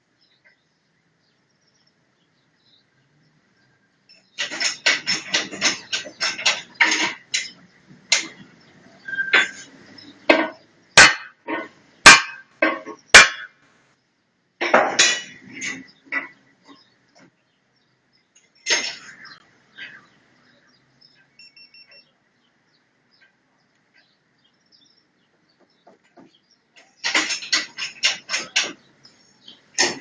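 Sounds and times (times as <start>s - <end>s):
metal tools tapping and clinking: 4.1s - 13.5s, 14.6s - 17.3s, 18.4s - 19.4s, 25.9s - 30.0s.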